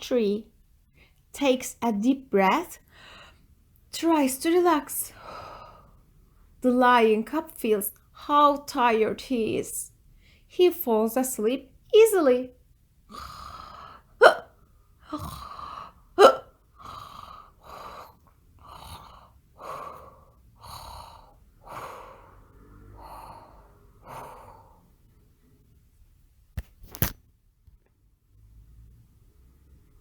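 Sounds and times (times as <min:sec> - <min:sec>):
slow regular breathing: 0:02.8 - 0:03.6, 0:05.1 - 0:06.6, 0:10.0 - 0:10.5, 0:13.1 - 0:25.4
sharp gasping breaths: 0:13.1 - 0:25.0.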